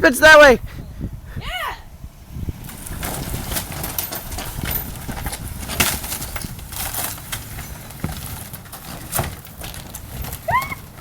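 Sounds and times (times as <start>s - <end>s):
wooden debris dragged over ground: 2.3s - 11.0s.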